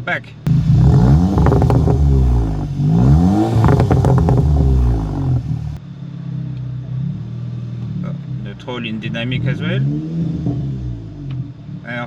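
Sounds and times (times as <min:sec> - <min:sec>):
car engine idling: 0:00.5 - 0:05.8
car engine revving: 0:00.5 - 0:05.8
exhaust crackles and pops: 0:00.5 - 0:05.8.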